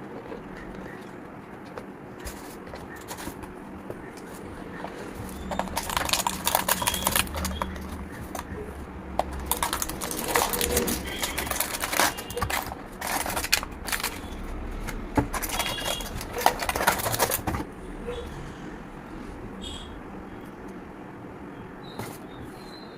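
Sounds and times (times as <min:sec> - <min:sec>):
plastic and cardboard packaging crinkling: 0:00.0 - 0:17.8.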